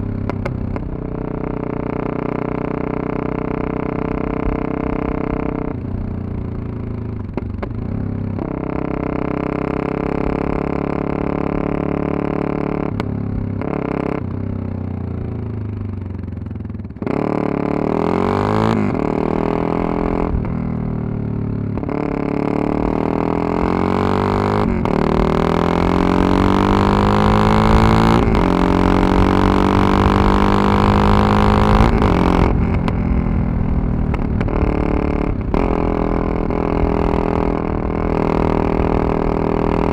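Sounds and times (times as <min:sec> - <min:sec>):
motorcycle engine accelerating: 0:00.0 - 0:39.9
wind rumble on microphone: 0:24.0 - 0:39.9.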